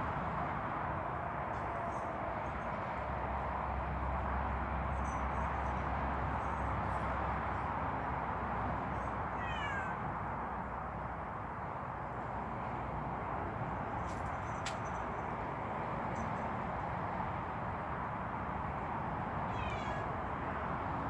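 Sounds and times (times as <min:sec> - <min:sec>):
cat meowing: 0:09.3 - 0:10.0, 0:19.5 - 0:20.2.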